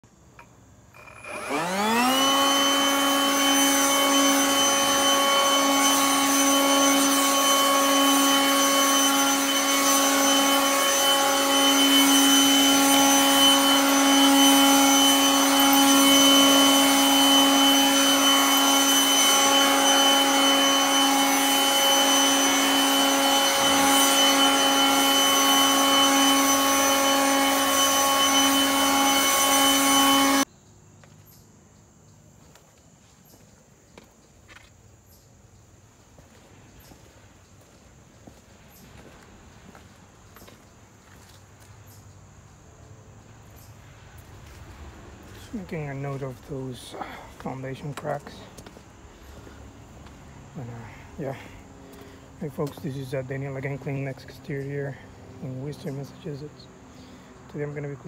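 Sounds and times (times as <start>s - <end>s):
pressure washer whine: 0.4s - 30.5s, 36.2s - 41.8s, 43.4s - 58.0s.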